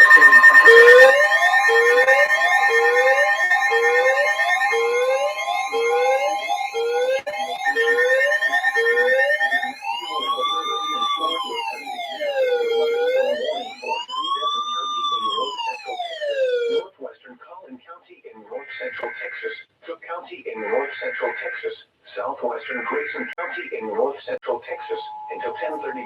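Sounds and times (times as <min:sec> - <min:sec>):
steady tone: 0:00.0 - 0:10.9
electronic siren: 0:00.0 - 0:16.8, 0:24.7 - 0:26.0.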